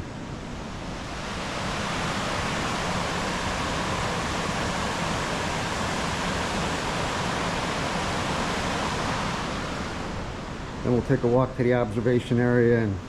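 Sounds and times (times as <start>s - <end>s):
river waterfall and rapids rushing: 0.7s - 10.8s.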